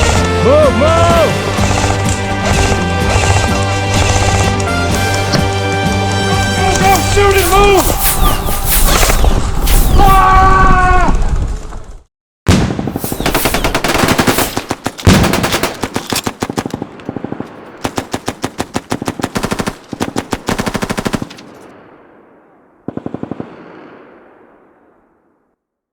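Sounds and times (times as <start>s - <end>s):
automatic gunfire: 1.6s - 4.6s, 13.0s - 21.6s, 22.9s - 23.6s.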